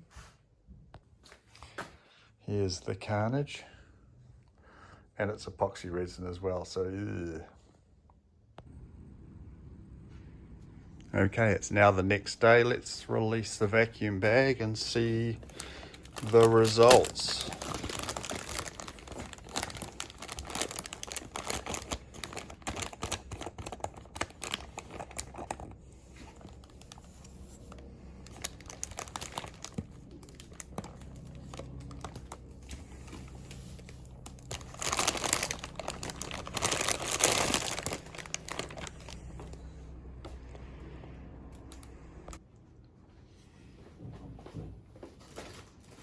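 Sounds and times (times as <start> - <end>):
plastic film crinkling and tearing: 14.9 - 39.6.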